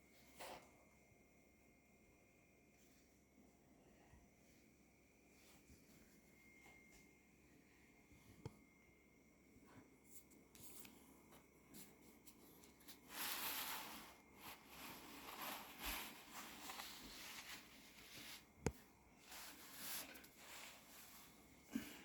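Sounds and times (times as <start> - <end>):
paper and cardboard rustling: 11.8 - 18.6, 19.2 - 21.4.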